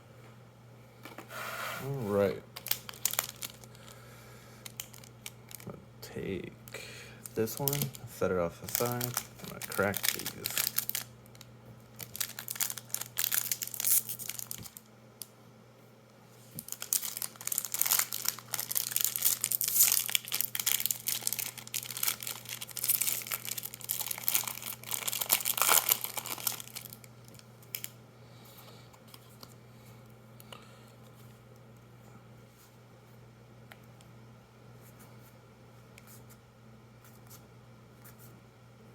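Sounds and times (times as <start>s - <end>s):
foil wrappers crinkling and tearing: 2.6s - 4.0s, 4.6s - 5.7s, 7.2s - 14.9s, 16.6s - 27.9s.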